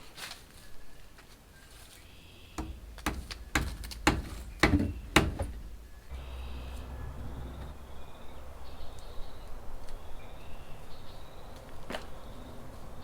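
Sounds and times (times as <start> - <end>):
sharp irregular knocks: 2.6 - 7.8.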